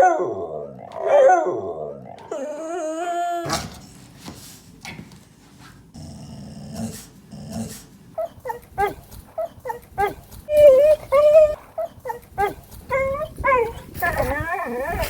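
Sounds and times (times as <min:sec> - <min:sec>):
dog whining: 0:00.0 - 0:03.9, 0:07.5 - 0:15.0
dog grumbling: 0:00.2 - 0:04.0, 0:06.0 - 0:15.0.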